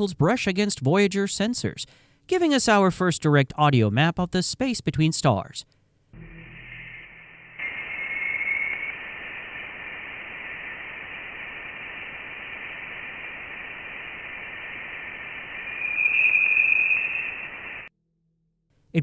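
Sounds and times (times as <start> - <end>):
steady static hiss: 5.6 - 17.9
brief high whistle: 6.2 - 9.9, 15.4 - 17.9.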